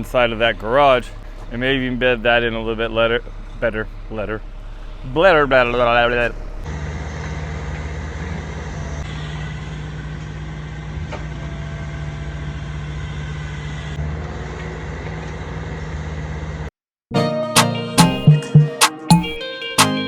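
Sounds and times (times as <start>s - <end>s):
excavator diesel engine running: 0.0s - 15.2s.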